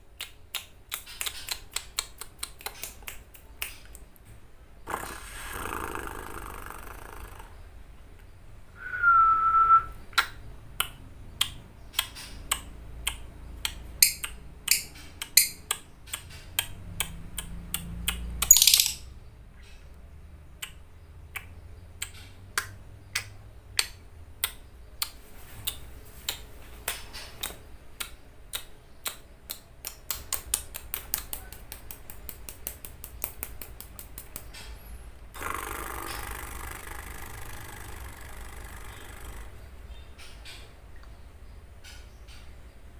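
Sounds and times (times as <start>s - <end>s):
lovebird shrill clicky song: 13.6s - 16.4s, 18.4s - 19.1s.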